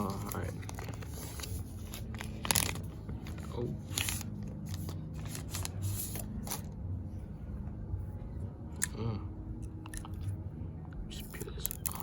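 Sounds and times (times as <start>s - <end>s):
packaging rustling and clicks: 0.0s - 6.8s
steady low hum: 0.0s - 12.0s.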